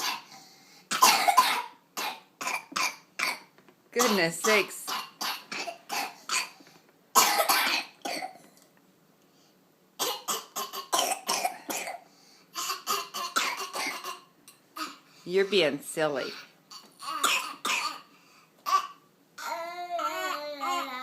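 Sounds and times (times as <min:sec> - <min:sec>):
children coughing: 0:00.0 - 0:00.3, 0:00.9 - 0:04.1, 0:04.9 - 0:06.6, 0:07.2 - 0:08.4, 0:10.0 - 0:15.0, 0:16.7 - 0:19.0.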